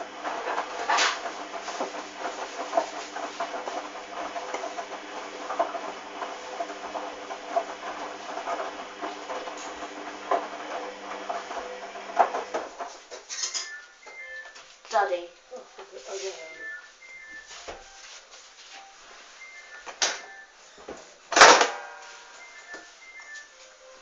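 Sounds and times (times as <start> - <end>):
washing machine motor hum: 0.0 - 14.6.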